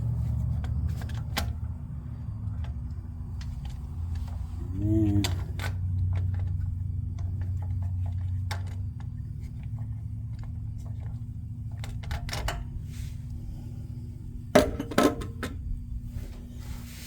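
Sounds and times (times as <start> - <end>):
steady low hum: 0.0 - 17.0
clicks and taps of handling parts: 5.2 - 12.7.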